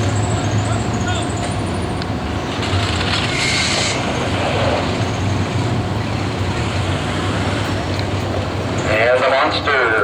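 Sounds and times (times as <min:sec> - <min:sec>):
race car engines rumbling: 0:00.0 - 0:10.0.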